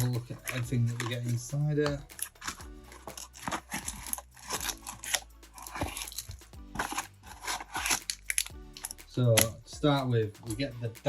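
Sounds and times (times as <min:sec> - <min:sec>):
quiet background music: 0:00.0 - 0:11.0
packaging tearing and crinkling: 0:02.2 - 0:09.5.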